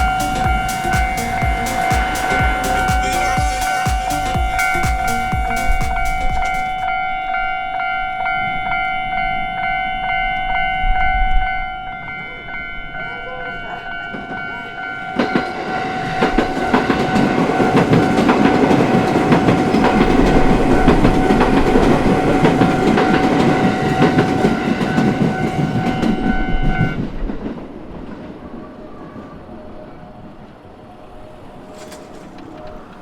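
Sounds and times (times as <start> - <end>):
level crossing alarm bell: 0.0 - 27.0
train wheel clatter: 14.0 - 28.6, 31.6 - 33.0.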